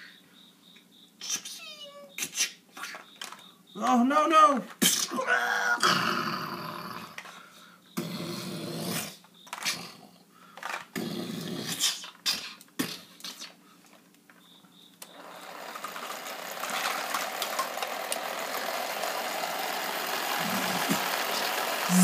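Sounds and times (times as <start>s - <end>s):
plastic toys clicking: 2.8s - 3.4s, 9.4s - 9.8s, 10.6s - 11.0s, 15.0s - 22.0s
small motor running: 15.0s - 22.0s.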